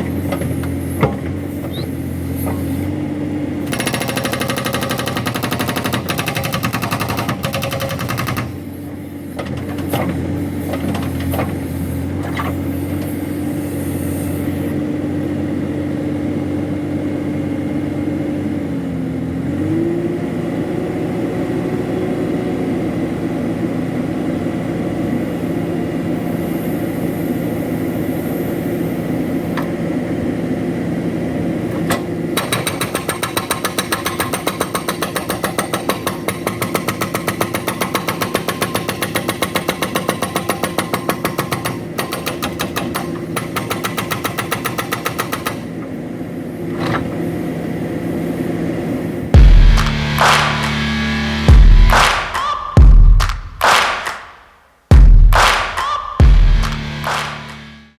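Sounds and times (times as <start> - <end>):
backhoe engine running: 0.0 - 53.7, 54.9 - 57.9
hydraulic rock breaker hammering: 3.6 - 13.3, 31.8 - 45.9, 49.4 - 54.2.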